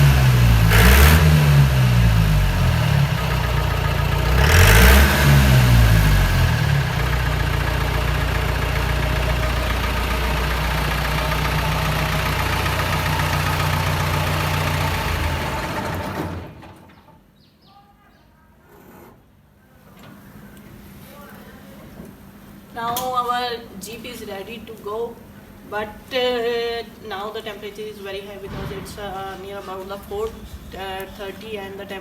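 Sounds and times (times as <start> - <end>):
car engine revving and idling: 0.0 - 16.6.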